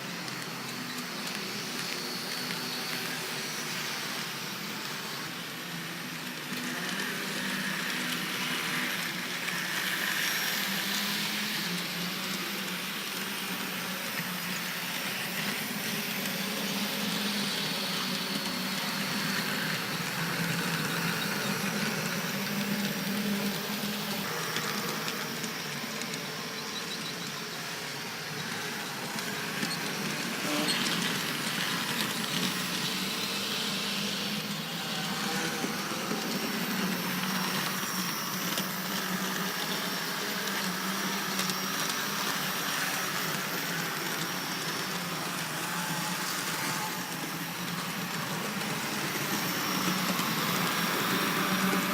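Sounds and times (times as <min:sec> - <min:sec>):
small electric motor whirring: 0:00.0 - 0:51.9
wheel and rail noise: 0:00.0 - 0:51.9.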